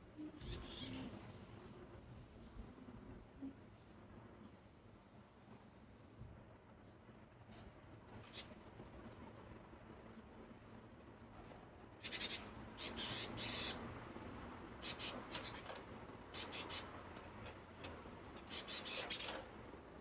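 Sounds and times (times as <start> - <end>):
birds chattering calls: 12.0 - 13.8, 14.8 - 15.6, 16.3 - 17.0, 18.4 - 19.4.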